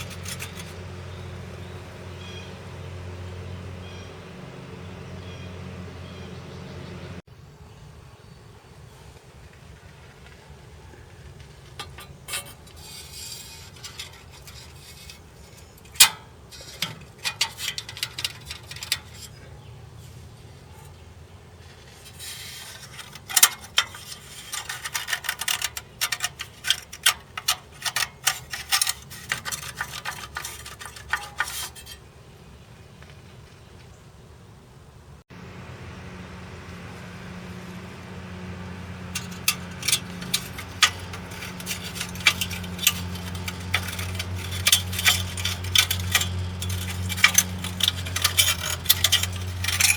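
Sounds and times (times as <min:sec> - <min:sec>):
steady low hum: 0:35.3 - 0:49.9.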